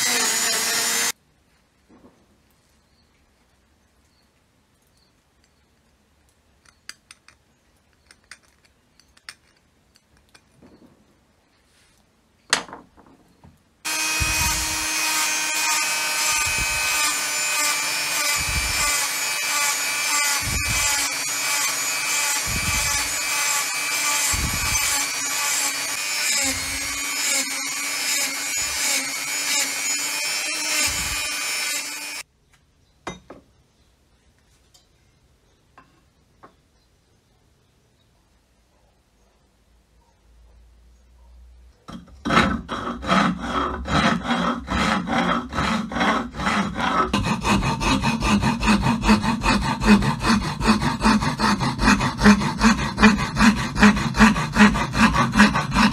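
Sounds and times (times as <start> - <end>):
electric power tool running: 0.0 - 1.1, 13.9 - 32.2.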